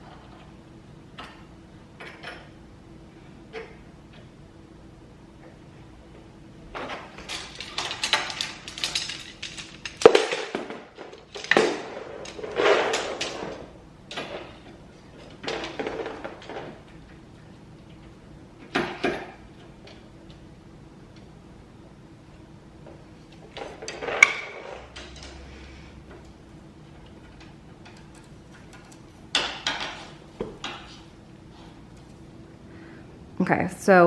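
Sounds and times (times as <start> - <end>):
faint steady hum: 0.0 - 34.0
frame parts rattling and clattering: 6.7 - 20.1, 22.9 - 32.3.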